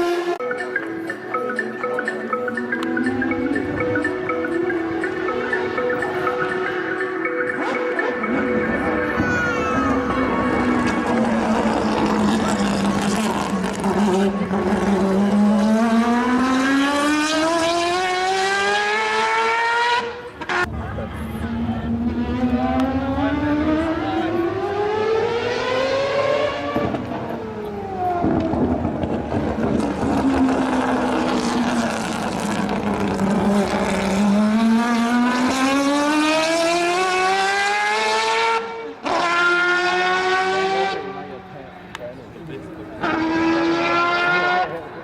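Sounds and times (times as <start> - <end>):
other motorbikes running: 0.0 - 45.0
motocross bike engine accelerating: 10.2 - 20.8.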